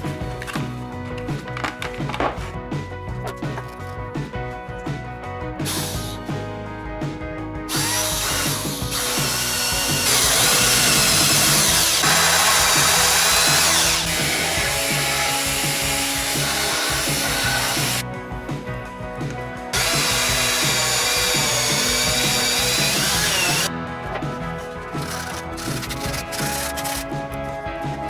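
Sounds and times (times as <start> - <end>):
background music: 0.0 - 28.0
electric drill running: 5.7 - 6.2, 7.7 - 18.0, 19.7 - 23.7, 25.0 - 27.1.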